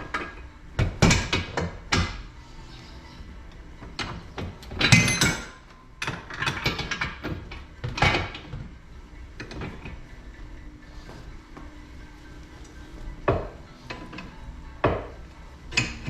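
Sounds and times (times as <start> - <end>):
tools knocking and clinking: 4.0 - 8.5.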